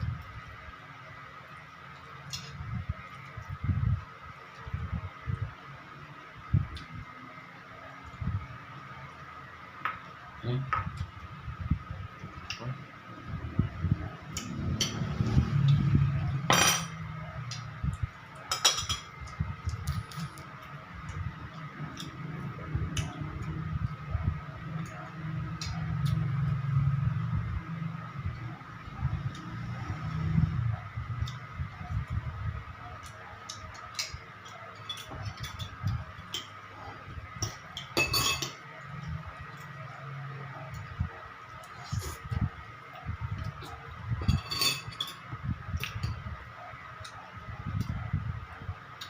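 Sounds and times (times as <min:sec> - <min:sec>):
metal utensils clinking on a plate: 0:16.5 - 0:17.0, 0:18.5 - 0:19.1, 0:33.7 - 0:36.6, 0:37.4 - 0:38.6, 0:44.2 - 0:45.3
cutlery clinking on a plate: 0:18.5 - 0:19.1, 0:37.4 - 0:38.6, 0:44.3 - 0:45.2.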